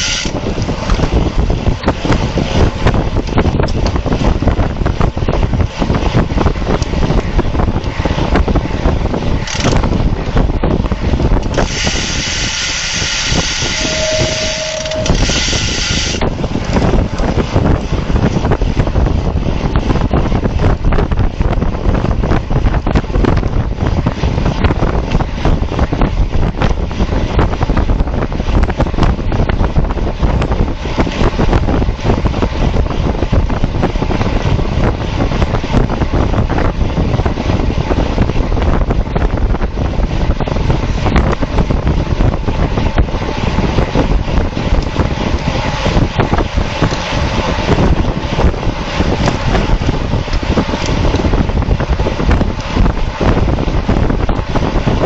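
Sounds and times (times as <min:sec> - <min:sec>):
wind buffeting microphone: 0:00.0 - 0:55.0
short steady tone: 0:12.3 - 0:16.2.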